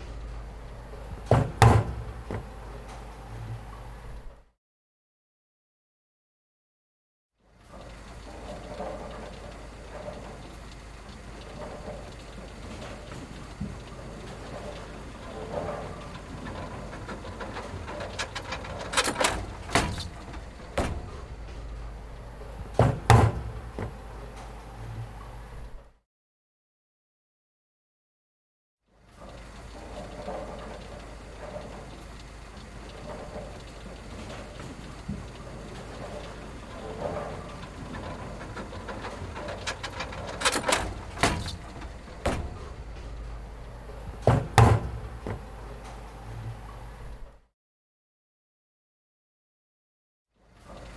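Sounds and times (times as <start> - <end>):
irregular knocks and bangs: 0.0 - 2.9, 16.4 - 24.4, 38.0 - 45.9
steady low hum: 0.0 - 4.3, 13.8 - 25.8, 35.2 - 47.3.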